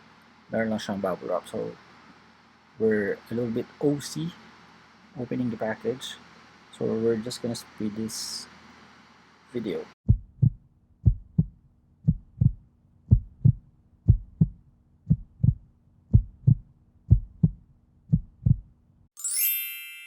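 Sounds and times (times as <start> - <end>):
faint low hum: 0.0 - 19.0
heartbeat thumps: 10.0 - 18.7
bright chime: 19.2 - 20.0.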